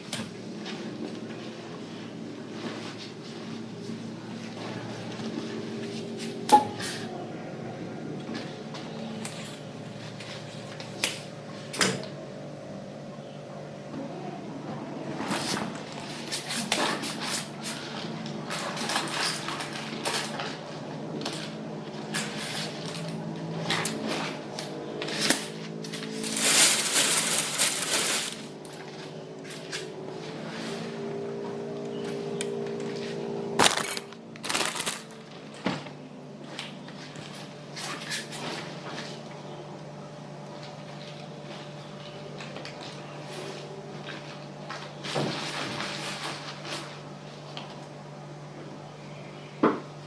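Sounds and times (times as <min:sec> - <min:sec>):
clatter and rustling: 0:15.1 - 0:30.9, 0:33.6 - 0:35.9
rustling: 0:26.0 - 0:28.6, 0:33.6 - 0:35.1
objects handled and set down: 0:33.6 - 0:35.1.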